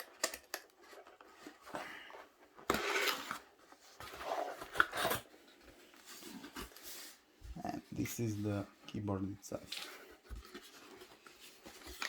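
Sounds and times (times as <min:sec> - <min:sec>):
cardboard scraping and rustling: 0:00.8 - 0:07.3.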